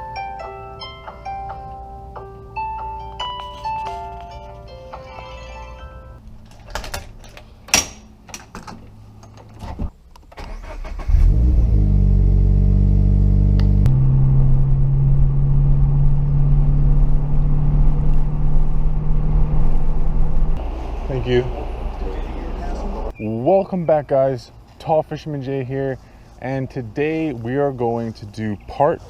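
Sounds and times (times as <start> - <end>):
vehicle engine starting and idling: 6.2 - 23.1.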